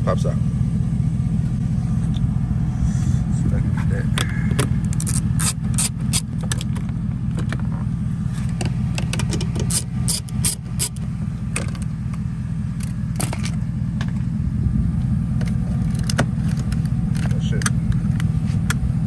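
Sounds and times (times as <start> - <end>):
steady low hum: 0.0 - 19.0
hand tools clicking on metal: 9.0 - 11.0.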